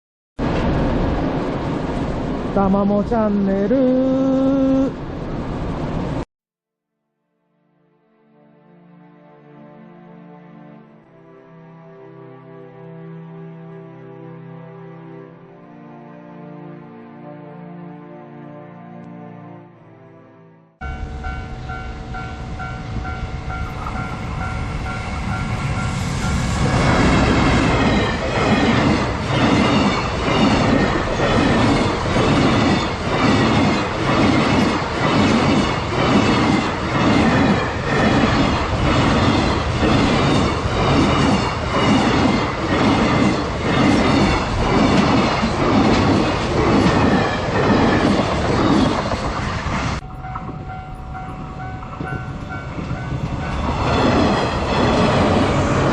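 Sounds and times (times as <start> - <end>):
freight train passing: 0.4 - 6.2, 20.8 - 55.9
level crossing warning bell ringing: 20.8 - 26.4, 50.0 - 54.0.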